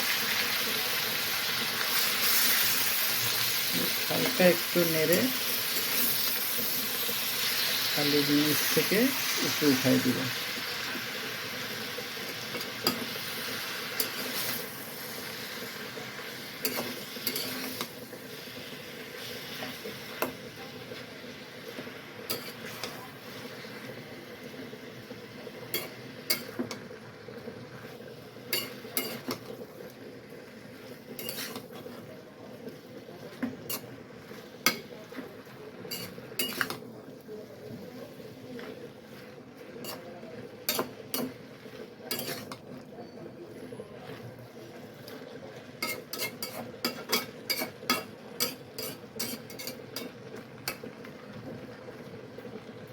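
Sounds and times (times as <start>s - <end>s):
low sizzle of cooking: 0.0s - 52.9s
utensil scraping and clinking pan: 16.6s - 17.9s, 28.5s - 29.5s, 31.2s - 31.8s, 35.9s - 36.8s, 39.8s - 40.0s, 42.1s - 42.7s, 45.8s - 50.8s.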